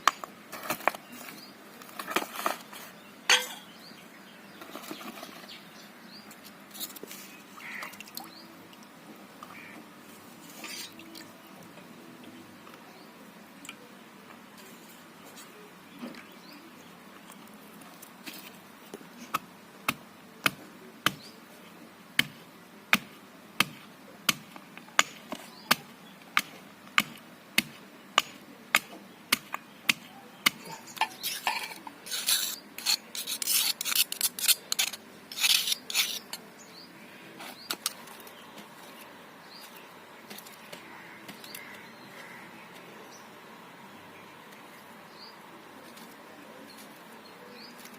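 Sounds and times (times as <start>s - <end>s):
stone rubbing on stone: 30.9s - 36.4s.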